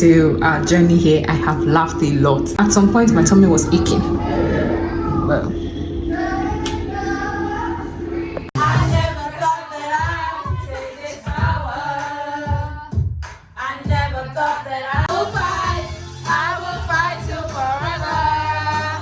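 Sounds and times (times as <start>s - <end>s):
woman singing: 8.6s - 13.0s
backing track with steady beat: 10.0s - 19.0s.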